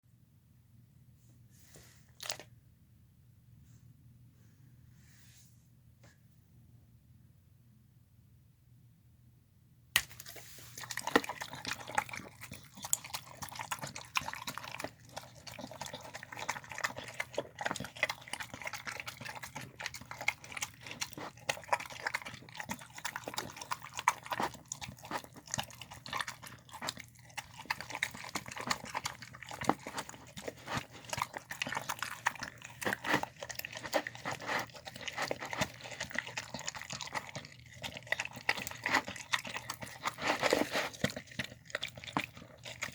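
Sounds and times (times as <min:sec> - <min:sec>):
dog chewing and smacking: 0:10.0 - 0:42.9.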